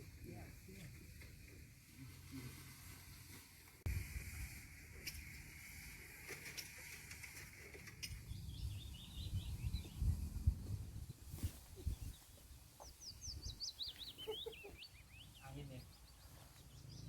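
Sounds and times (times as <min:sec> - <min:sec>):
low wind rumble: 0:08.2 - 0:13.7
small bird twittering: 0:11.8 - 0:17.0.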